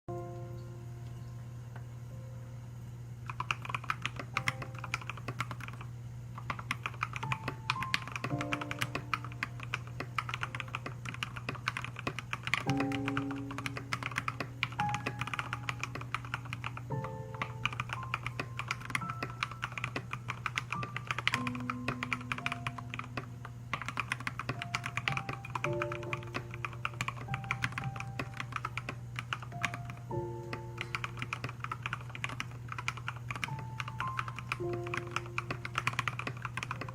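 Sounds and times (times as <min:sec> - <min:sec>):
mechanical keyboard typing: 0:03.2 - 0:36.9
background music: 0:06.9 - 0:11.3, 0:12.5 - 0:32.1, 0:33.4 - 0:36.9.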